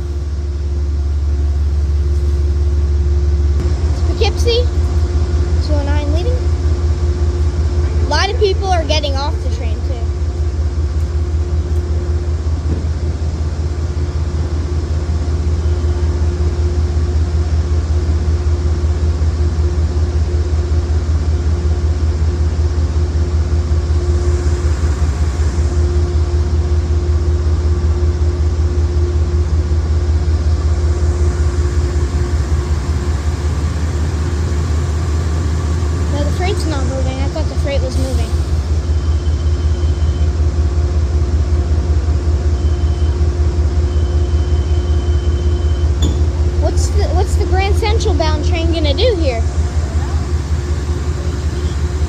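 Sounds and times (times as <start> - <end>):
steady higher hum: 0.0 - 19.8, 45.7 - 52.0
diesel locomotive idling: 0.0 - 52.0.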